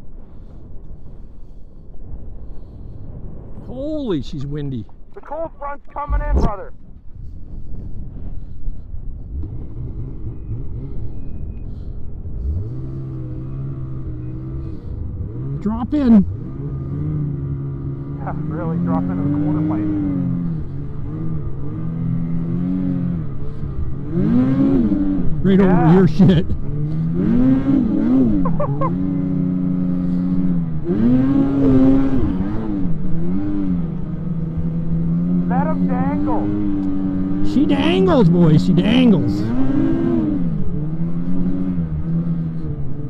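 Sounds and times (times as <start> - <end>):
wind buffeting microphone: 0.0 - 5.3, 6.1 - 14.2
snowmobile engine revving: 12.4 - 43.0.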